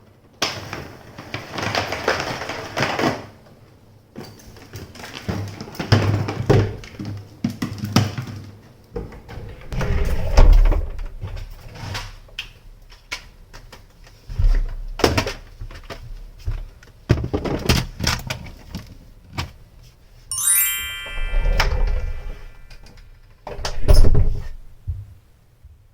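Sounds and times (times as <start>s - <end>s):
electronic chime: 20.3s - 22.9s.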